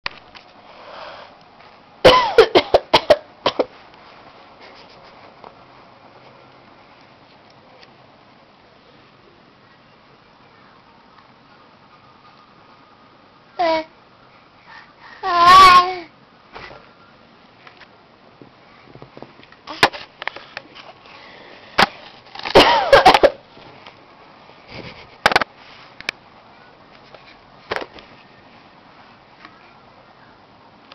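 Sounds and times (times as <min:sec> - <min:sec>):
person coughing: 0:02.0 - 0:03.7, 0:22.5 - 0:23.4.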